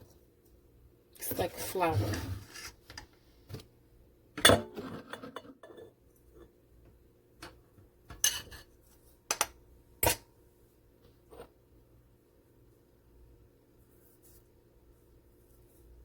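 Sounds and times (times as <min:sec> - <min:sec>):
metal bowl and lid clinking: 0:09.3 - 0:10.3.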